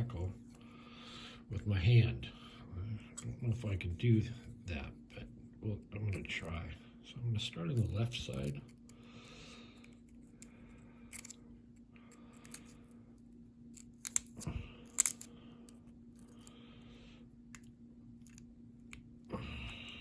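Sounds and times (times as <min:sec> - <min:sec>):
lock pick scraping and clicking: 0:11.1 - 0:11.4, 0:13.7 - 0:16.5.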